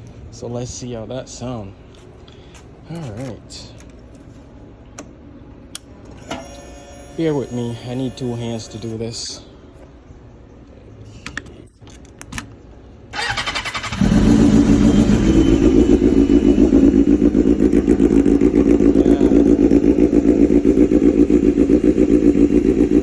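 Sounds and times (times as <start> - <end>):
motorcycle engine idling: 13.1 - 23.0
electric starter cranking: 13.2 - 17.0.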